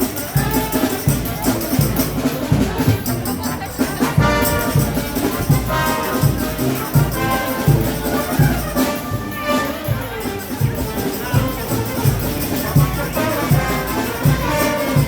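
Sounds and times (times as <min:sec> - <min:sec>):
driving percussion beat: 0:00.0 - 0:15.0
brass section playing: 0:04.0 - 0:15.0.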